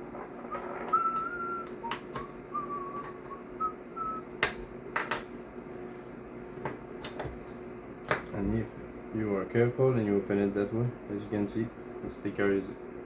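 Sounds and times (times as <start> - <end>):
person whistling softly: 0.5 - 4.3.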